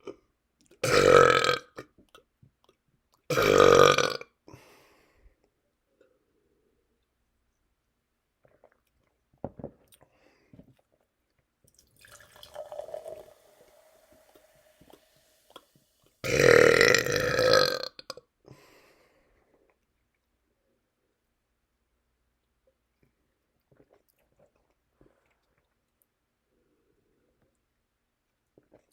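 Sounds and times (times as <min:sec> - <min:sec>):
man belching: 0:00.8 - 0:01.7, 0:03.3 - 0:04.2, 0:16.2 - 0:18.2.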